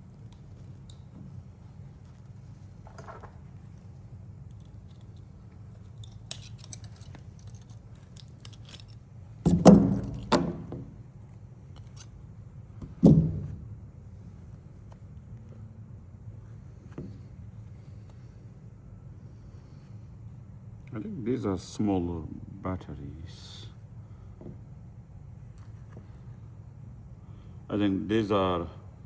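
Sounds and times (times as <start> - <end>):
metal clicks and scrapes: 4.5 - 10.7, 11.7 - 12.2.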